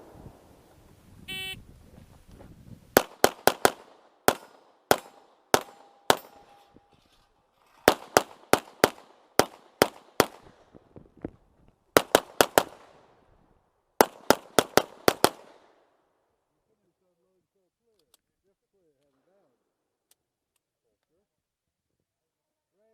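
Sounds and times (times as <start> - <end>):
pistol shots: 3.0 - 6.7, 7.8 - 10.8, 12.0 - 13.1, 14.0 - 15.8
steel target ringing: 4.3 - 7.0.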